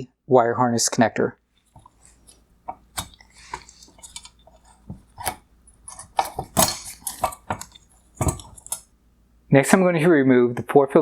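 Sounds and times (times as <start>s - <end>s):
small plastic parts clicking and rattling: 1.6s - 8.9s.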